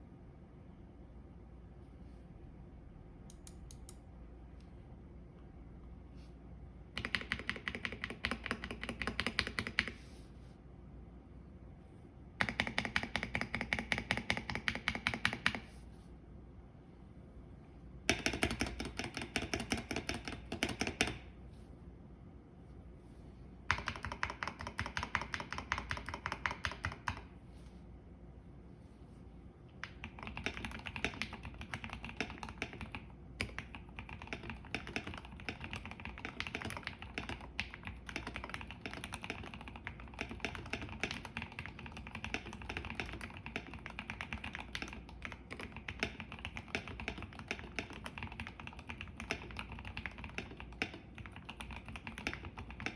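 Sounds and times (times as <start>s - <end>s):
typing on mechanical keyboard: 6.9s - 10.0s, 12.4s - 15.7s, 18.1s - 21.3s, 23.7s - 27.3s, 29.8s - 52.9s.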